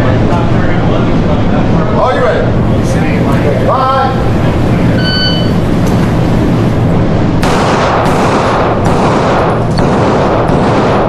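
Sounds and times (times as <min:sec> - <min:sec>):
loud steady rumble: 0:00.0 - 0:11.0
handgun shots: 0:07.4 - 0:11.0.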